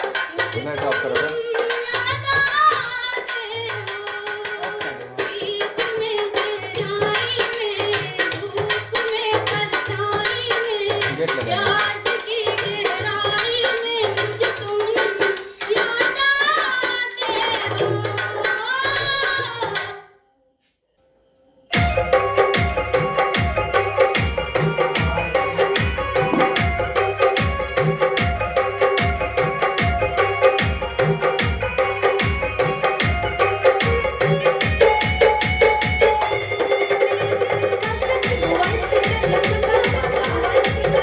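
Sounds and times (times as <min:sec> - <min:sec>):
song with singing over drum beat: 0:00.0 - 0:20.0, 0:21.7 - 0:41.0.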